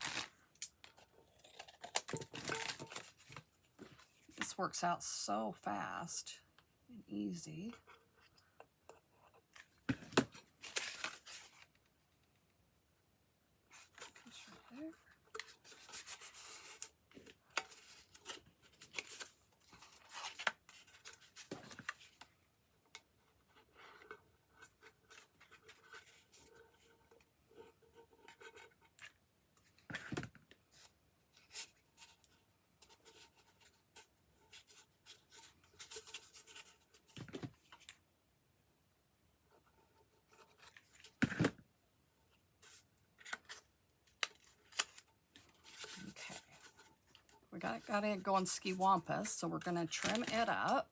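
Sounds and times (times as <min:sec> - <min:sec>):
thick paper rustling: 0:00.0 - 0:00.3.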